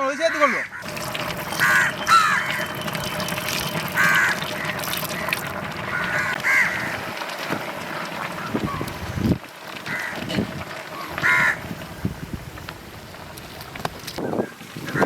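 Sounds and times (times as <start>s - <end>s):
crows cawing: 0.0s - 7.1s, 9.8s - 11.7s.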